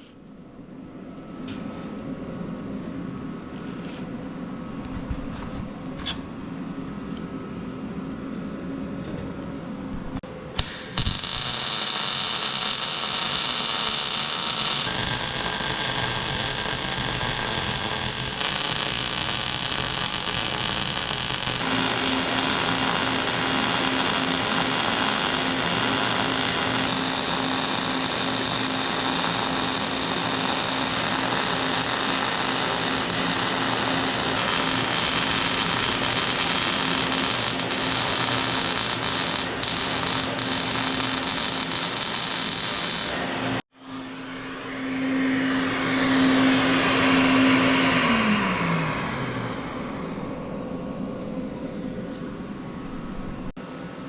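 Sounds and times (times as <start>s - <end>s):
power tool hissing whine: 10.6s - 50.0s.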